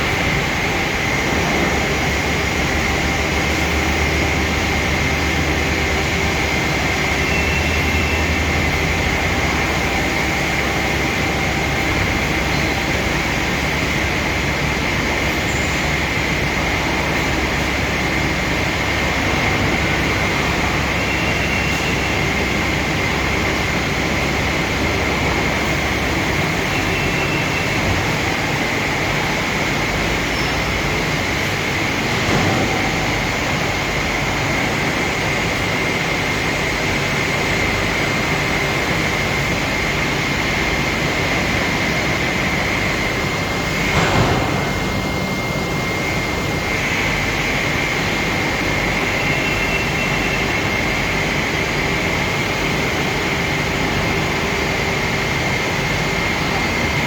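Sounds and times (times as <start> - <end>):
machine high whine: 0.0 - 57.0.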